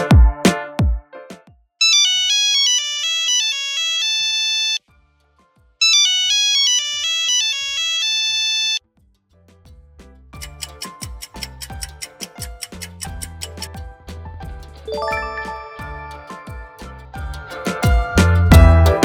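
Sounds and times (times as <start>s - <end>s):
phone ringtone melody: 1.8s - 4.8s, 5.8s - 8.8s, 14.9s - 16.8s.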